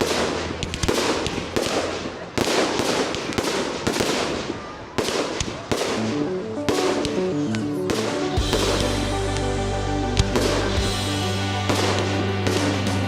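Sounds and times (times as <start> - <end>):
fireworks bangs: 0.0 - 9.5, 10.2 - 13.0
fireworks crackling: 0.0 - 13.0
music with stepping melody: 6.0 - 13.0.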